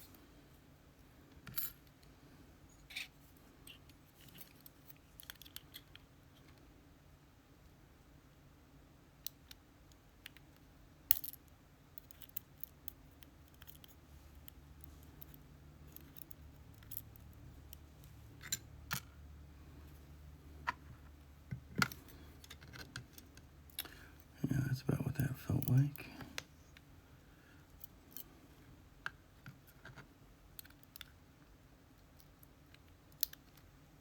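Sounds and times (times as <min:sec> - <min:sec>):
small metal parts clicking: 0:12.0 - 0:19.1.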